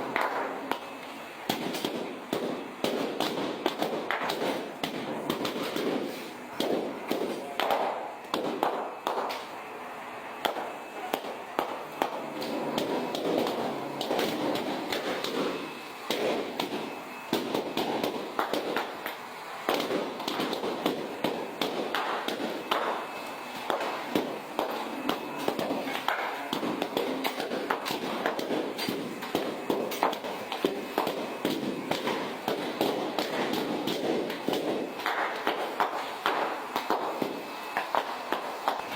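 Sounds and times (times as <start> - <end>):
background chatter: 0.0 - 2.8, 4.5 - 8.3, 8.9 - 20.4, 22.2 - 32.5.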